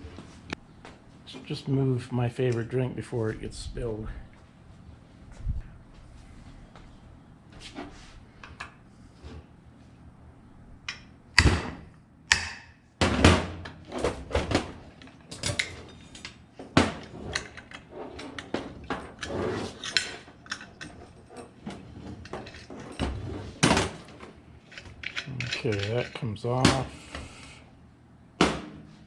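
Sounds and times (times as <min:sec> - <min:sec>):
metal parts and tools clattering: 0:15.0 - 0:16.4, 0:17.0 - 0:26.4.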